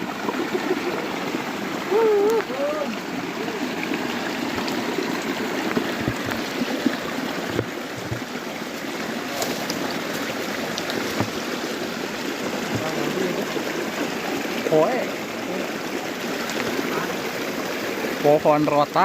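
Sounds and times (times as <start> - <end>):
stream flowing: 0.0 - 19.0
small sharp splashes: 3.8 - 13.7.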